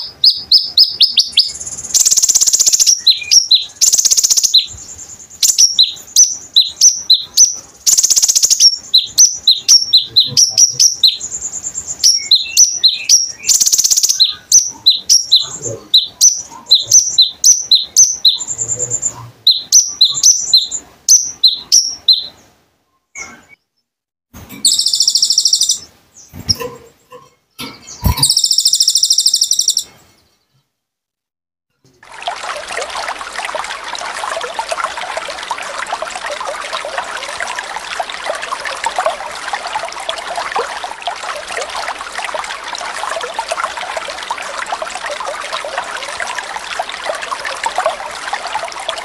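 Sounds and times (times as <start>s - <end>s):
bird high sharp chirps: 0.0s - 22.4s, 24.6s - 26.7s, 27.6s - 30.0s.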